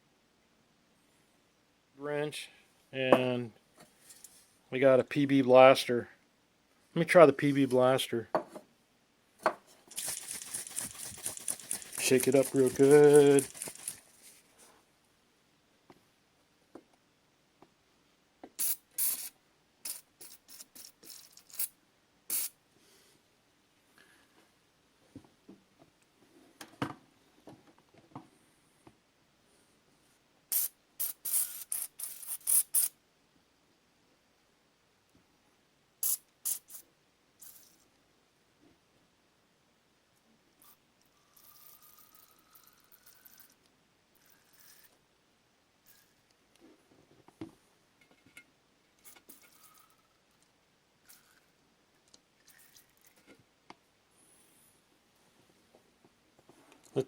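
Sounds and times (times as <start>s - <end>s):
aerosol can spraying: 9.9s - 14.2s, 18.6s - 21.7s, 22.3s - 22.6s, 30.5s - 32.9s, 36.0s - 36.8s.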